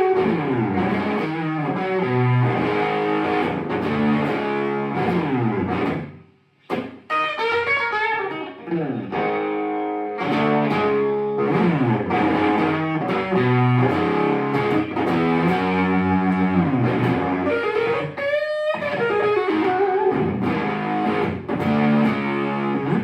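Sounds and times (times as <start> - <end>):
distorted electric guitar: 0.0 - 23.0.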